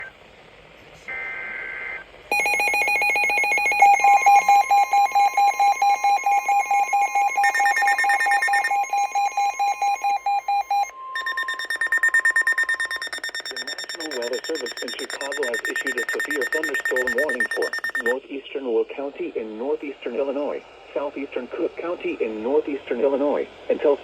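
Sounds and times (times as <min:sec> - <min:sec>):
data burst tones: 0:02.3 - 0:18.2
rapid electronic beeping: 0:02.3 - 0:18.2
steady warning tone: 0:02.3 - 0:18.2.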